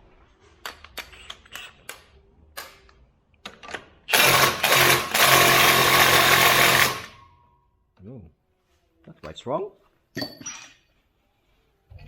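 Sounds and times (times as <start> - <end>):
power tool running: 4.1 - 7.1.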